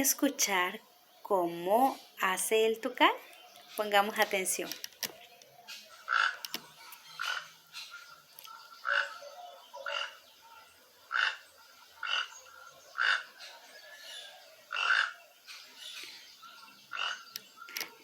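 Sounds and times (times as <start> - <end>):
toucan calling: 5.1 - 18.0.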